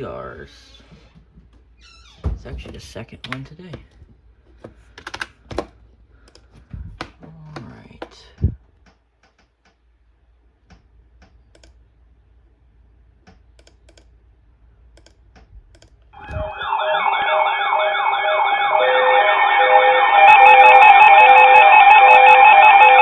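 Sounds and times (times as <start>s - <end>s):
computer keyboard clicks: 4.9s - 7.2s, 11.2s - 11.8s, 13.2s - 14.1s, 15.0s - 16.5s
electronic siren-like warbling tones: 16.2s - 23.0s.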